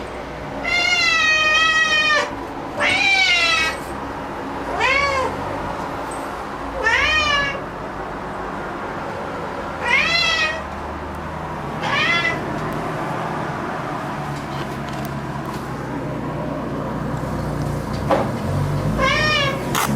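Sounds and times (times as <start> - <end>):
cat meowing loudly: 0.6 - 3.9, 4.7 - 5.4, 6.8 - 7.7, 9.8 - 10.8, 11.8 - 12.5, 19.0 - 19.9.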